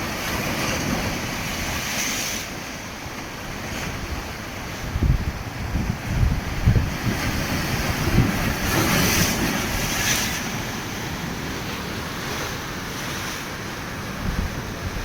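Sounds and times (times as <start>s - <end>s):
surf washing against rocks: 0.0s - 15.0s
wind buffeting microphone: 4.8s - 10.2s, 14.2s - 15.0s.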